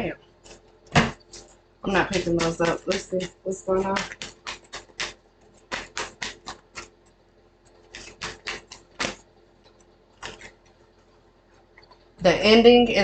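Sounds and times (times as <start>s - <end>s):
cards being shuffled: 3.9s - 6.9s, 7.8s - 9.2s, 10.2s - 10.6s.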